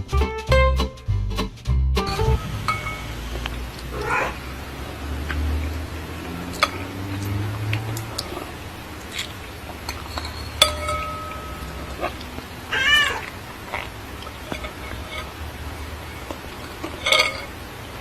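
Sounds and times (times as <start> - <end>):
cat meowing: 3.9 - 4.4, 11.9 - 13.8.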